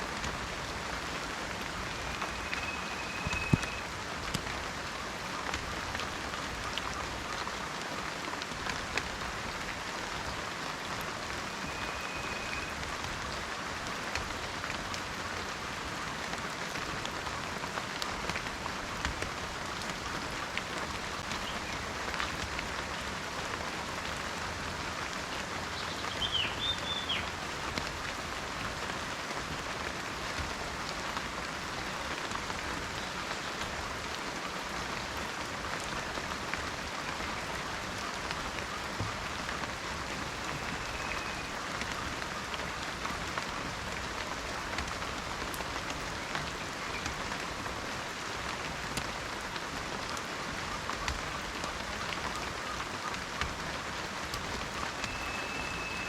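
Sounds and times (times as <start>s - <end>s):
steady rain in forest: 0.0s - 56.0s
raindrop ticks: 1.5s - 4.8s, 5.4s - 15.6s, 16.2s - 23.0s, 34.8s - 56.0s
bird whistle: 2.0s - 3.9s, 11.5s - 12.8s, 26.2s - 27.3s, 40.6s - 41.5s, 55.0s - 56.0s
bird chirps: 2.1s - 3.8s, 55.0s - 56.0s.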